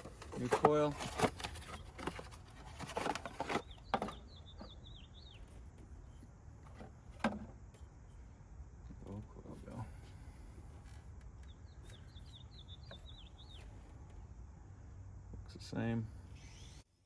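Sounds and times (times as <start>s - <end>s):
small bird chirping: 1.5s - 6.3s, 11.3s - 14.3s, 15.7s - 17.0s.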